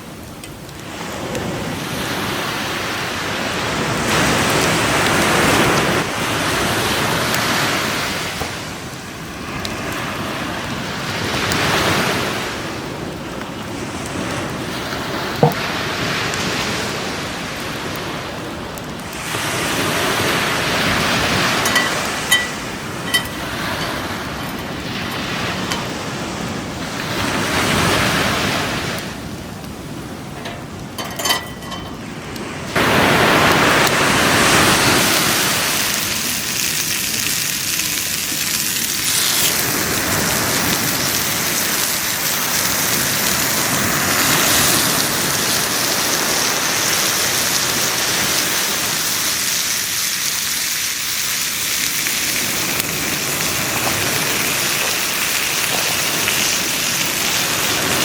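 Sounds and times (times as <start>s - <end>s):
bacon and eggs sizzling in a pan: 1.7s - 28.4s, 30.9s - 58.0s.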